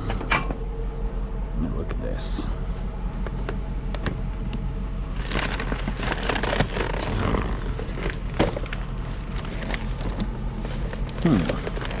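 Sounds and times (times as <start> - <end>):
steady low hum: 0.0 - 12.0
rustling handling noise: 5.1 - 12.0.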